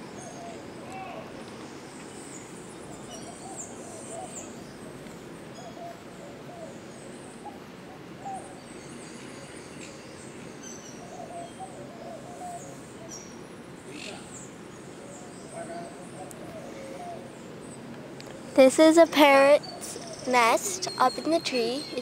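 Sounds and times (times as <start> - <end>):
steady background noise: 0.0 - 22.0
bird hooting: 11.0 - 13.2, 15.0 - 17.4
high bird chirps: 19.6 - 22.0.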